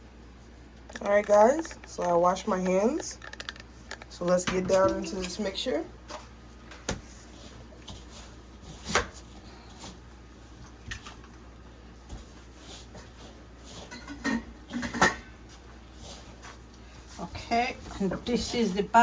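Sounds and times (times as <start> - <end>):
dishes and utensils clinking: 13.8 - 15.3.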